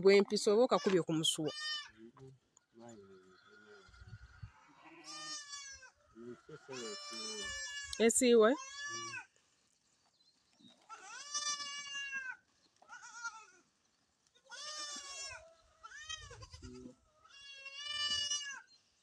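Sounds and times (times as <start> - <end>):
goats bleating: 0.7 - 2.0, 2.9 - 9.4, 10.8 - 13.7, 14.4 - 18.7.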